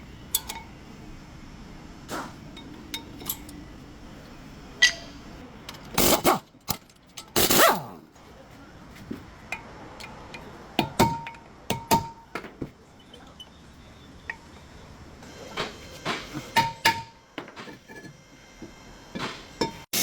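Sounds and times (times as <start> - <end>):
metal-on-metal knocks ringing: 4.8 - 5.2.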